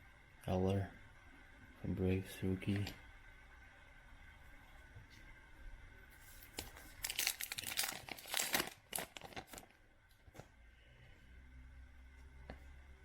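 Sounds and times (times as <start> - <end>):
plastic packaging crinkling: 6.4 - 9.8.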